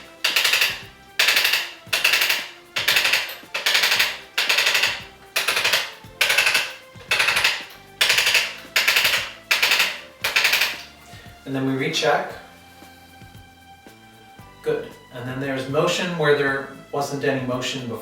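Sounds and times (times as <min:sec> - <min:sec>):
rapid rattling taps of instrument: 0:00.0 - 0:11.0.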